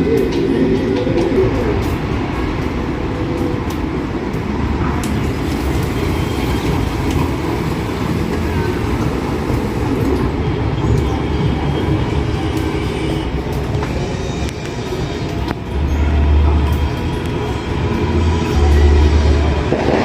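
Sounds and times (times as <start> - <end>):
street traffic rumble: 0.0 - 20.0.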